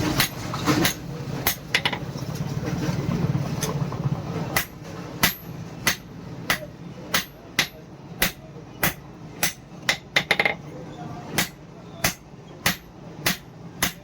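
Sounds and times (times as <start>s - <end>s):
hammer striking steel on anvil: 4.6s - 10.6s, 11.4s - 14.0s.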